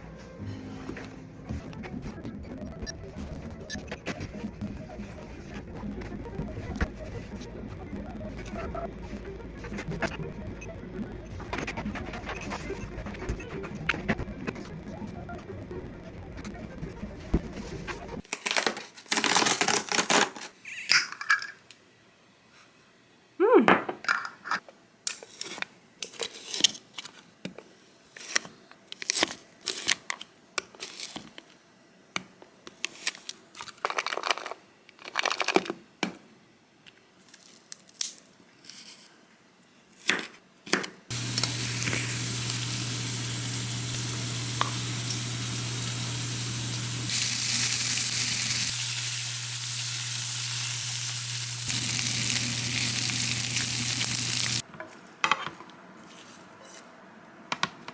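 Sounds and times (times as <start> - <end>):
packaging crinkling and utensil clicks: 18.2 - 20.6, 32.7 - 35.8
food sizzling in a pan: 41.1 - 54.6.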